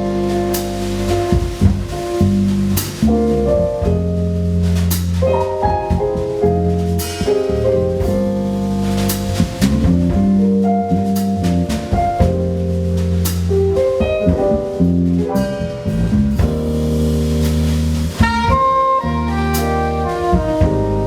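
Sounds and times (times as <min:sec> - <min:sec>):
drum kit with cymbals: 0:00.0 - 0:21.0
low bass notes: 0:00.0 - 0:21.0
keyboard melody: 0:18.1 - 0:21.0
soprano saxophone: 0:18.2 - 0:21.0.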